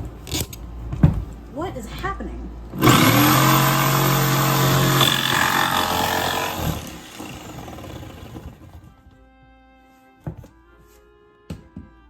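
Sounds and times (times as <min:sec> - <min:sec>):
electric jigsaw running: 0:02.8 - 0:08.8.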